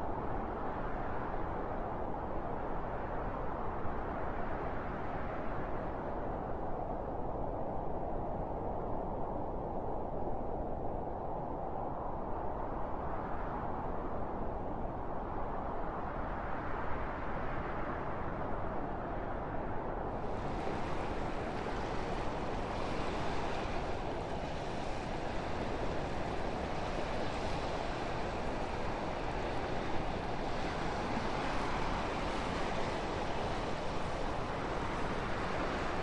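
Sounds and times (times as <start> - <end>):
wind blowing: 20.1 - 36.0.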